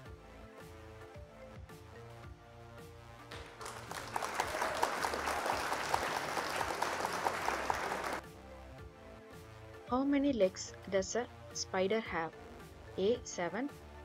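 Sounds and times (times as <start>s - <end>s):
background music: 0.0s - 14.0s
recorded applause: 3.3s - 8.2s.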